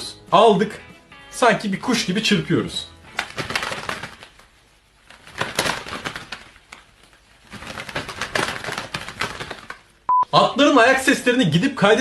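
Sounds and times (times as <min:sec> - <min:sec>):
leather gloves flapping like wings: 0:03.0 - 0:10.0.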